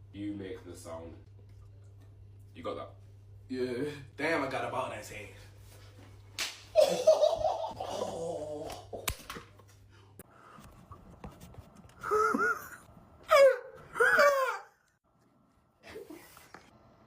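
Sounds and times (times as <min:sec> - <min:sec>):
person moaning: 0:07.8 - 0:09.0.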